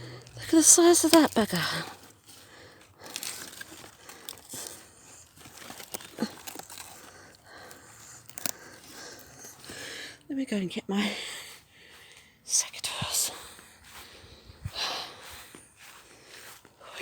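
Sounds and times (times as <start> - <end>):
rustling and crinkling foliage: 0.0 - 12.4.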